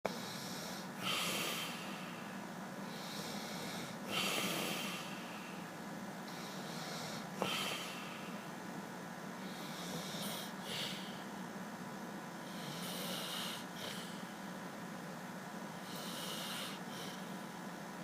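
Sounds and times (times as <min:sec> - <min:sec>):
person snoring: 0:00.1 - 0:02.2, 0:02.9 - 0:05.4, 0:06.3 - 0:08.4.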